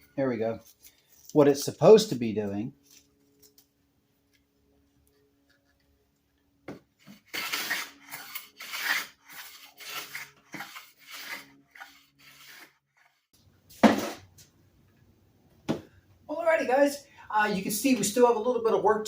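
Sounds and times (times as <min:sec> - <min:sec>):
hand plane shaving wood: 0:07.1 - 0:13.3.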